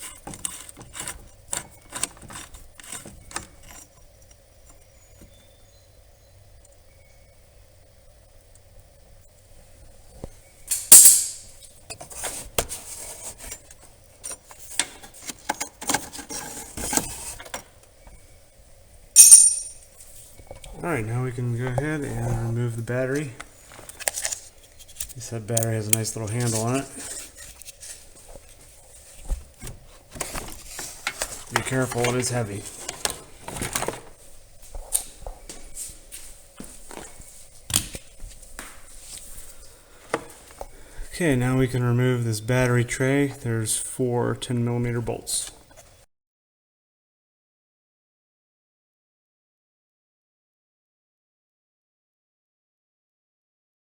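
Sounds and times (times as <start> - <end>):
clicks rattles and scrapes: 0.0 - 4.2, 10.7 - 17.7, 23.7 - 34.2
tools clattering: 10.7 - 11.5, 19.2 - 19.8.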